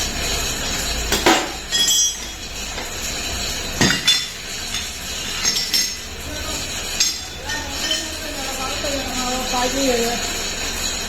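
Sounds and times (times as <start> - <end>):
metal tools clinking: 0.0 - 11.0.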